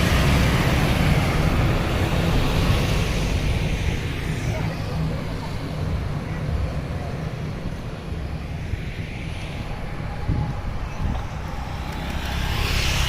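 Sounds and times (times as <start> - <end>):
heavy vehicle passing: 0.0 - 13.0.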